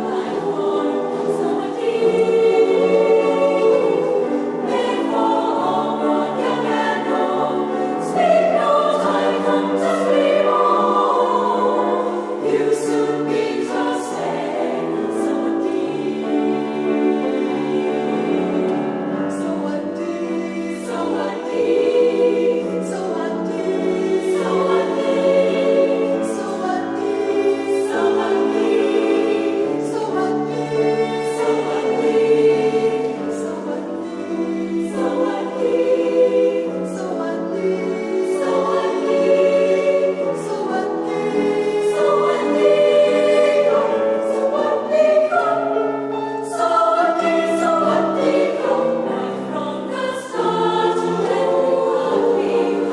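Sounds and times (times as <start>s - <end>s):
choir singing: 0.0s - 52.9s.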